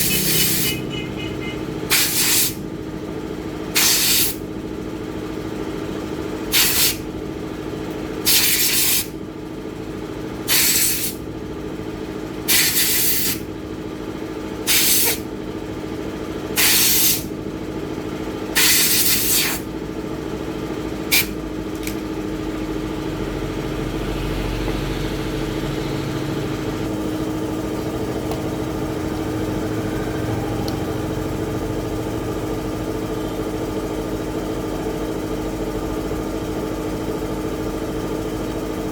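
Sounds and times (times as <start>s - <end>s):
steady mechanical hum: 0.0s - 38.9s
short hissing blasts: 1.9s - 2.6s, 6.5s - 7.0s, 8.3s - 9.1s, 12.5s - 13.4s, 18.6s - 19.6s.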